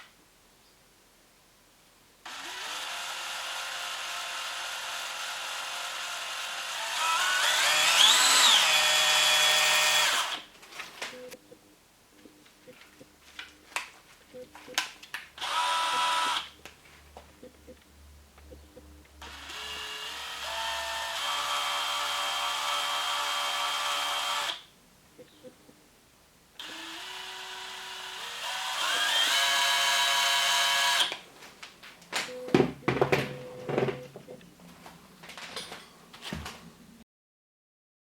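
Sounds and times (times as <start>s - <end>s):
cordless drill whining: 2.3s - 10.5s, 15.4s - 16.5s, 19.2s - 24.6s, 26.6s - 31.2s.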